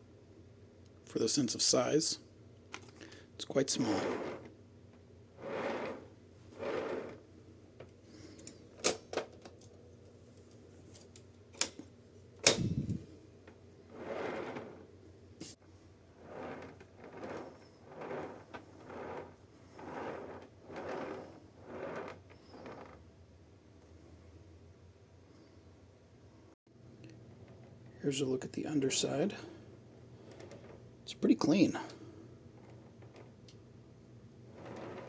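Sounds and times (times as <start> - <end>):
soft brushing: 3.7 - 4.5, 5.4 - 7.2, 13.9 - 14.9, 16.2 - 23.0, 34.5 - 35.0.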